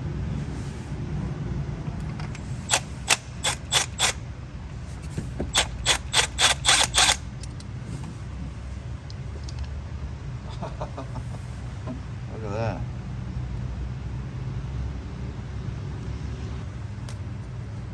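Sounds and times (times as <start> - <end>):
steady low hum: 0.0 - 14.2
hand ratchet clicking: 2.0 - 4.2, 5.5 - 7.7.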